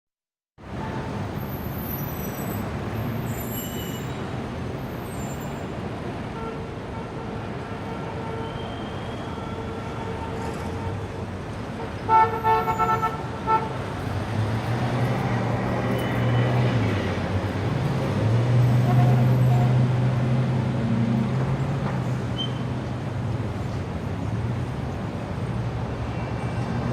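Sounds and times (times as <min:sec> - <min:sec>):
city street traffic: 0:00.6 - 0:26.9.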